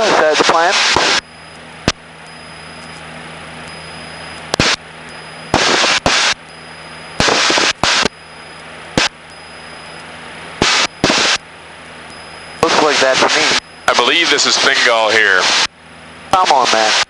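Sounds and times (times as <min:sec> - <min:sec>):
aircraft engine droning: 0:00.0 - 0:16.9
bursts of rushing noise: 0:05.5 - 0:06.4, 0:07.2 - 0:08.1, 0:10.6 - 0:11.4.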